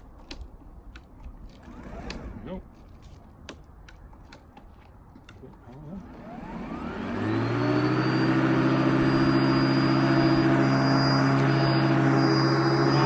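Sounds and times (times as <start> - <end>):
electric lawn mower whining: 1.6 - 2.5, 6.0 - 13.0.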